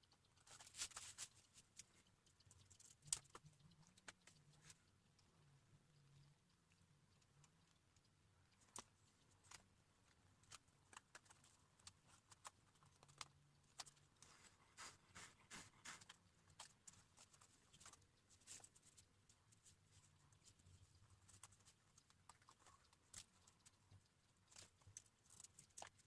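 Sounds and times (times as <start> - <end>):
low steady hum: 0.0 - 26.0
scratchy scrapes: 14.2 - 16.2.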